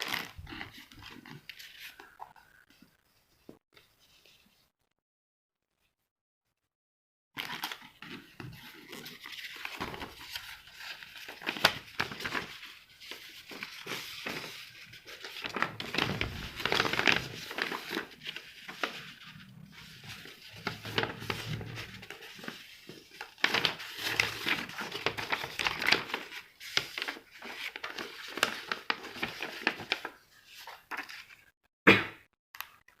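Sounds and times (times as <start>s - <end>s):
packaging crinkling and tearing: 0.0s - 2.1s, 7.4s - 31.3s.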